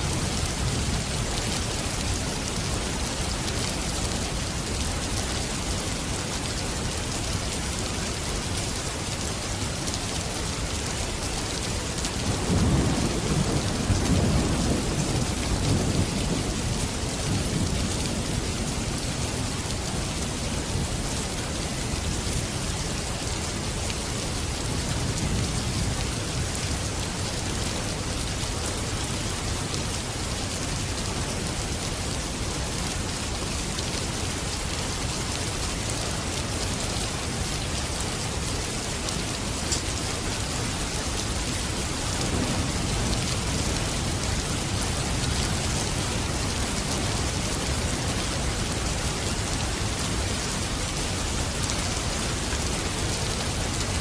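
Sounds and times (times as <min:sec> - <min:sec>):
steady rain hissing: 0:00.0 - 0:54.0
thunder rumbling: 0:12.2 - 0:19.0, 0:42.1 - 0:46.6.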